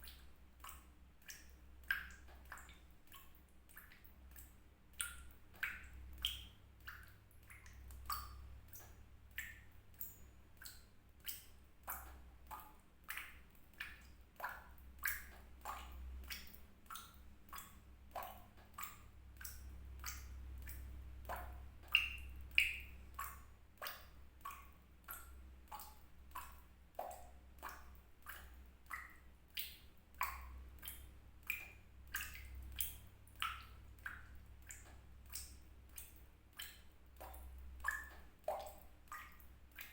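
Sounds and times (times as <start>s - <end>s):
water drops dripping into water: 0.0s - 39.9s.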